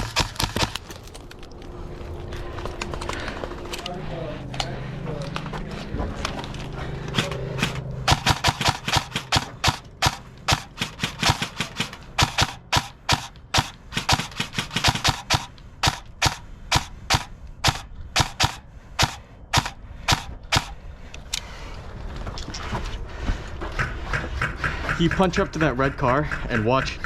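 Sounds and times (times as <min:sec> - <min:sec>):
airsoft rifle shots: 0:00.0 - 0:01.2, 0:07.1 - 0:20.8.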